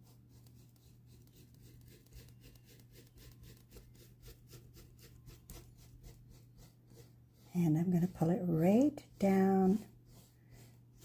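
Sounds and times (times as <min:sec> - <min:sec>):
low steady hum: 0:00.0 - 0:11.0
paintbrush strokes scratching: 0:00.0 - 0:11.0.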